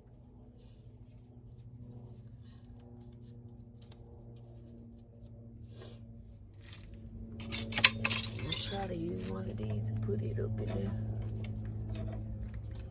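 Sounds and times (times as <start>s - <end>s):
low electrical hum: 0.0s - 12.9s
tools ticking while handled: 7.4s - 8.9s.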